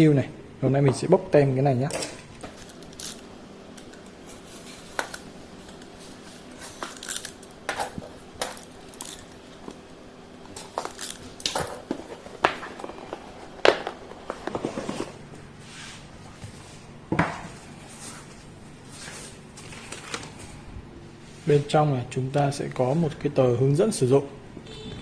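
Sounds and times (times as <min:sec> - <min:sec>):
seal stickers peeling: 0:02.5 - 0:09.9.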